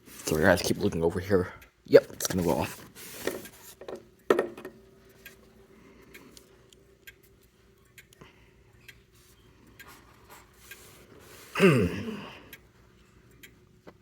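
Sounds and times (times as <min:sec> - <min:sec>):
clock ticking softly: 0:05.0 - 0:11.2, 0:12.5 - 0:14.0.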